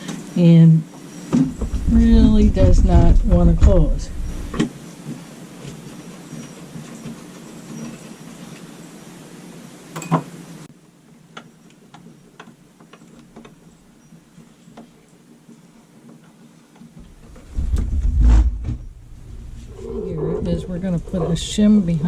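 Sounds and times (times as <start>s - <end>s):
wooden window sash scraping: 1.5s - 4.6s, 17.0s - 19.8s.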